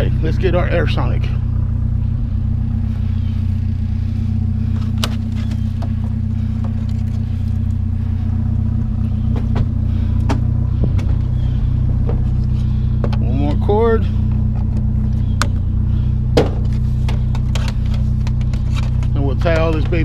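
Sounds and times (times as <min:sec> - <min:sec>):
vehicle engine idling: 0:00.0 - 0:20.0
knocks and clanks: 0:09.2 - 0:11.4, 0:12.0 - 0:13.2, 0:16.3 - 0:20.0.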